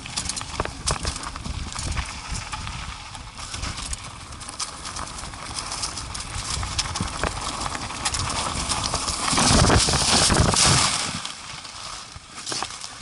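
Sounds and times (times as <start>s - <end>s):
atv knocking and rattling: 3.4s - 10.9s.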